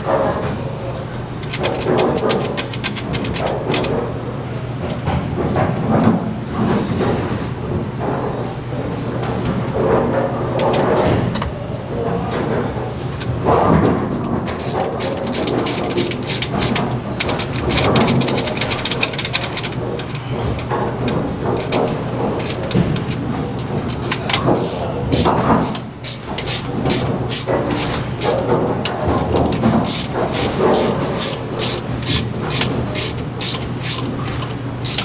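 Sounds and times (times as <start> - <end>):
metallic clicks and clanks: 1.4 - 4.1, 14.5 - 35.0
machinery humming: 14.5 - 35.0.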